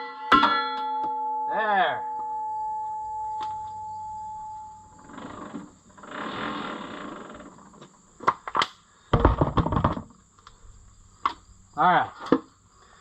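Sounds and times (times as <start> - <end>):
struck metal ringing: 0.0 - 5.1.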